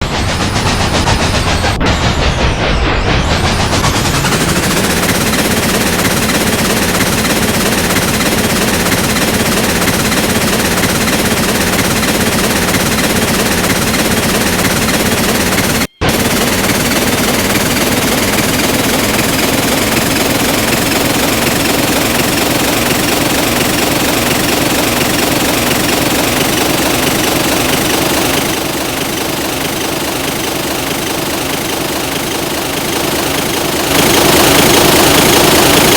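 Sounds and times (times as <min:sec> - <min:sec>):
train clattering rattle: 0:00.0 - 0:35.9.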